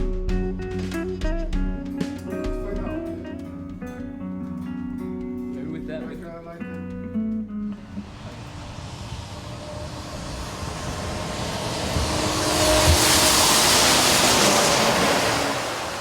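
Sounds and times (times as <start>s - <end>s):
vehicle passing by: 7.8s - 16.0s.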